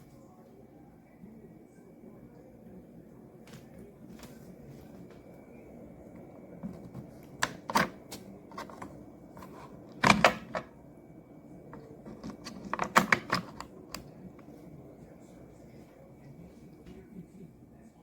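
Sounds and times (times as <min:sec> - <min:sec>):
hard objects clicking and knocking: 0:06.6 - 0:10.7, 0:11.8 - 0:14.0.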